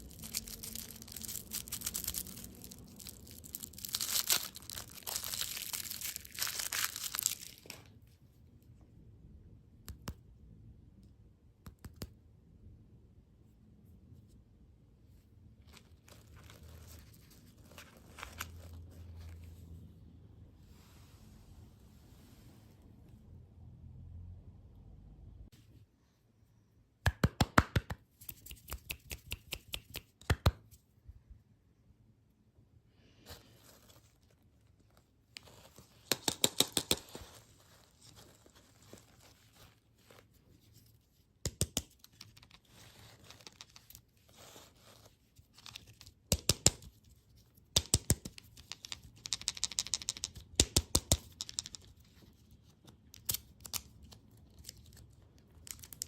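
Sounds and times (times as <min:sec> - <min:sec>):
candy wrappers crinkling: 0:00.0 - 0:08.0, 0:53.1 - 0:56.0.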